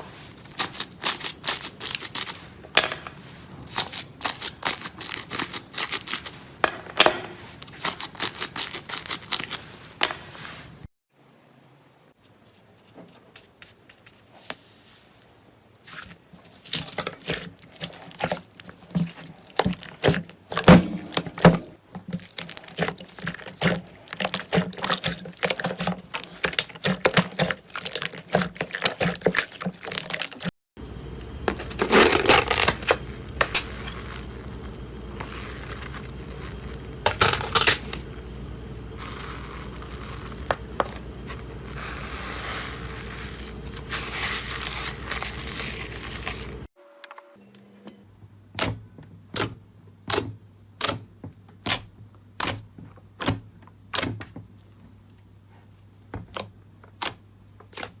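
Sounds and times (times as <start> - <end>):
slime squelches: 15.8 - 30.5.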